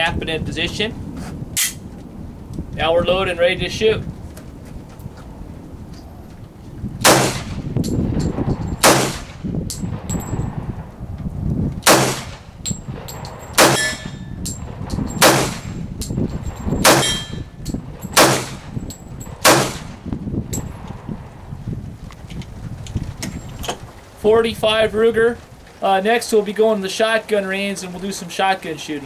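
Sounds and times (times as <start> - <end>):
handgun shots: 7.0 - 7.6, 8.8 - 9.4, 11.9 - 12.4, 13.6 - 14.2, 15.2 - 15.8, 16.8 - 17.4, 18.2 - 18.6.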